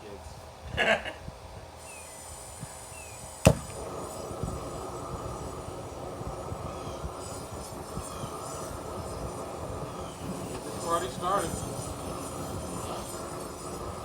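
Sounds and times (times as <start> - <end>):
steady rushing flame: 1.3 - 14.0
gas torch lighting pop: 3.0 - 4.6, 10.2 - 13.2.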